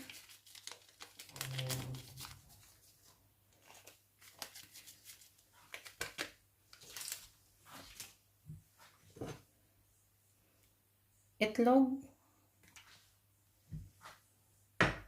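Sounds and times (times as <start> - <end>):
packaging crinkling and rustling: 0.0 - 8.2.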